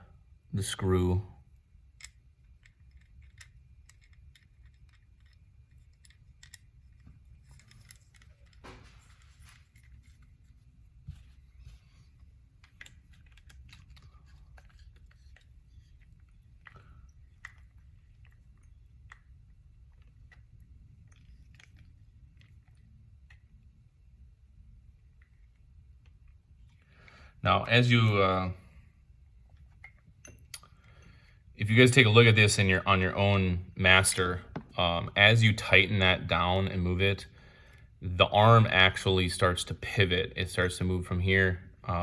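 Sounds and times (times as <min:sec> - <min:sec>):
low steady hum: 0:00.0 - 0:42.0
screwdriver clicks and scrapes: 0:02.0 - 0:10.6, 0:12.6 - 0:19.2.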